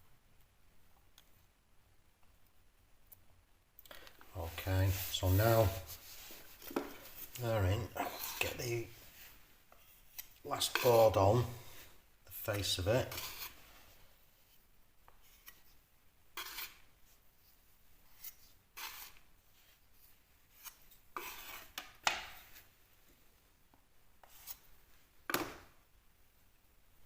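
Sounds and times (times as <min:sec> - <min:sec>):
filling knife scraping plasterboard: 0:07.8 - 0:08.6, 0:10.1 - 0:13.7, 0:16.4 - 0:16.9, 0:18.1 - 0:19.3, 0:20.5 - 0:21.8.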